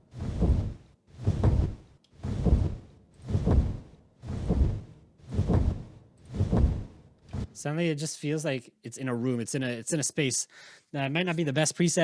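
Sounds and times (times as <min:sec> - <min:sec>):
heavy whooshing wing beats: 0:00.0 - 0:07.6.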